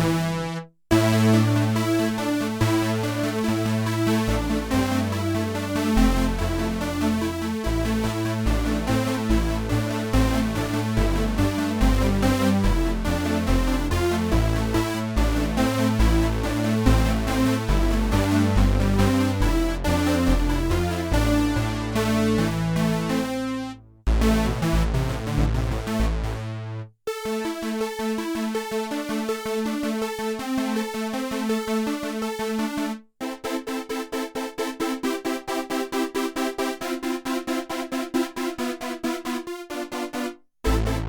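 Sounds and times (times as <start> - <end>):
fast repeating synth notes: 0.0 - 1.4, 40.7 - 41.0
low synth bass line: 0.0 - 26.9, 40.7 - 41.0
synthesizer chords: 0.0 - 28.3, 28.9 - 41.0
rhythmic synth notes: 0.0 - 30.4, 31.0 - 41.0.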